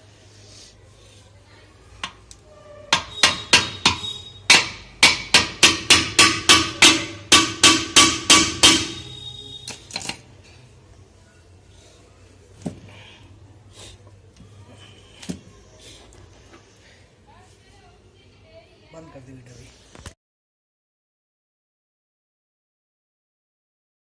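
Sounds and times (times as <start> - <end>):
separate knocks: 2.9 - 9.1
hammer ringing on metal: 2.9 - 9.2.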